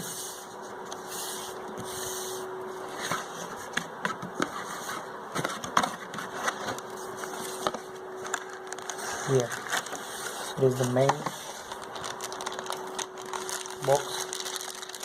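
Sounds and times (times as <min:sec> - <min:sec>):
packaging being handled: 0:05.6 - 0:15.0.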